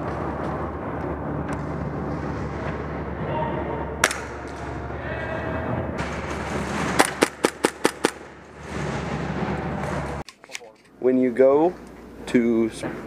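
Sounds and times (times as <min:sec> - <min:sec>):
airsoft gun shots: 0:06.8 - 0:08.3.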